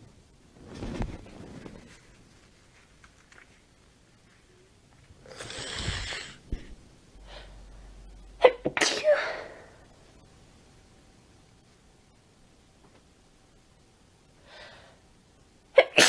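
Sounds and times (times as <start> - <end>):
noisy rush of breath: 5.2 - 8.0
woman sneezing: 8.4 - 9.7.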